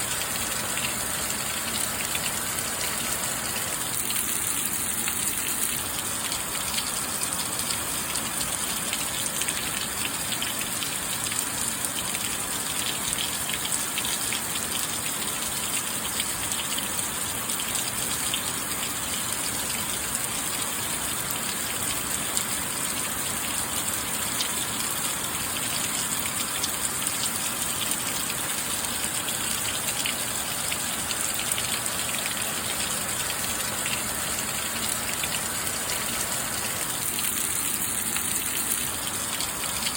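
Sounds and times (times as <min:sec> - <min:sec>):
steady rain hissing: 0:22.7 - 0:39.9.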